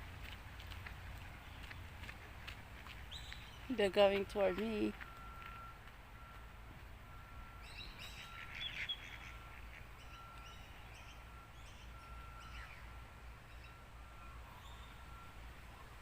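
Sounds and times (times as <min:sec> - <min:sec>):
birds calling: 0:00.6 - 0:05.0, 0:07.6 - 0:13.8.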